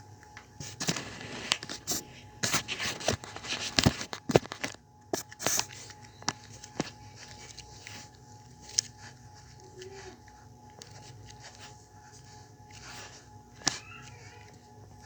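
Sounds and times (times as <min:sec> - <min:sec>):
packaging crinkling and rustling: 0:00.3 - 0:15.0.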